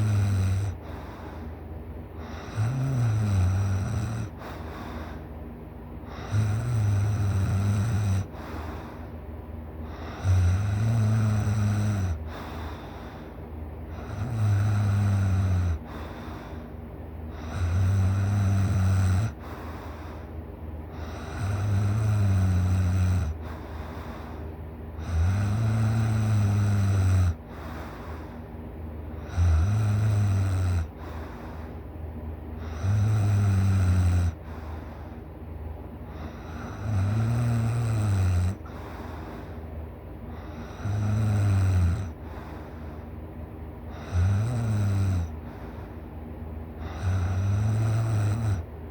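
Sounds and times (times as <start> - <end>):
person snoring loudly: 0.0 - 1.0, 2.2 - 4.4, 6.1 - 8.7, 9.9 - 12.5, 13.9 - 16.1, 17.3 - 19.5, 20.9 - 23.5, 25.0 - 27.8, 29.2 - 31.3, 32.6 - 34.6, 36.1 - 38.9, 40.3 - 42.5, 43.9 - 45.4, 46.8 - 48.7
quiet breathing: 0.0 - 48.9.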